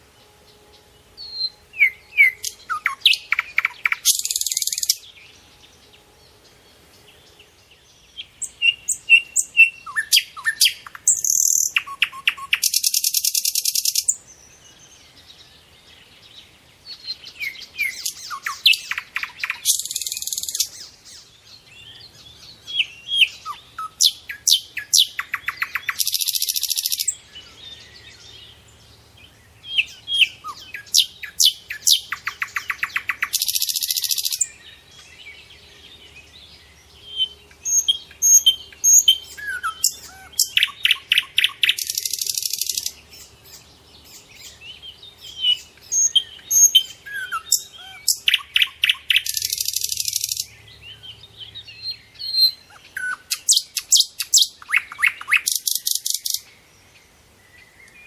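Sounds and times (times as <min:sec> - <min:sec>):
songbirds singing: 0:00.0 - 0:58.0
bird chirps and whistles: 0:01.2 - 0:05.0, 0:08.4 - 0:14.2, 0:37.1 - 0:42.9, 0:45.3 - 0:50.4, 0:51.8 - 0:56.4.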